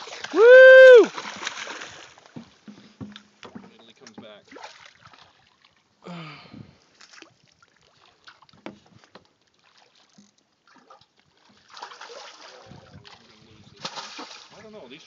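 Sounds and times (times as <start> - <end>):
splashing: 0.0 - 5.9, 6.8 - 15.0
faint knocks and clicks: 2.2 - 4.4.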